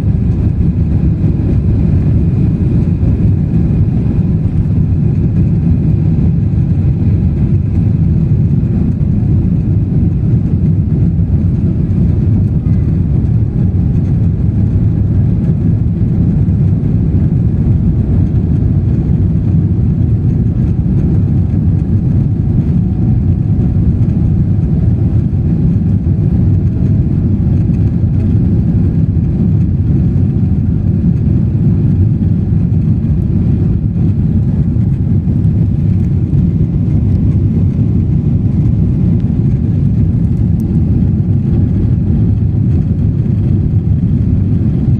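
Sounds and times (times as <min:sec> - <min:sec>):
rushing air: 0:00.0 - 0:16.7, 0:31.2 - 0:44.9
airplane engines rumbling: 0:00.0 - 0:44.9.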